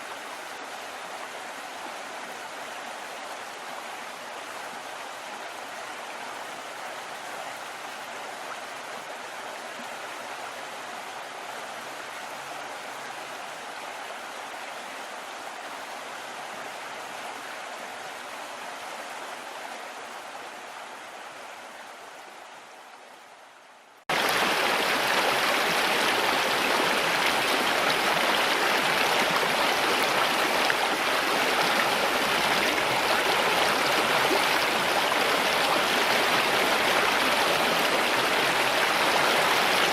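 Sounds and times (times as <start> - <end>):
river water rushing: 24.1 - 39.9.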